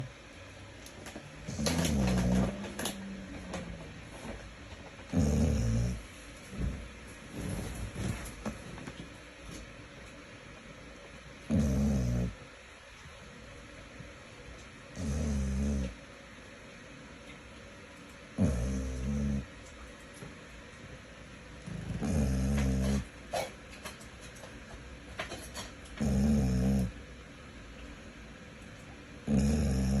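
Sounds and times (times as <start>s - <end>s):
deep snoring: 1.5s - 3.4s, 5.1s - 6.0s, 11.5s - 12.4s, 15.0s - 16.0s, 18.4s - 19.5s, 21.6s - 23.1s, 26.0s - 26.9s, 29.3s - 30.0s.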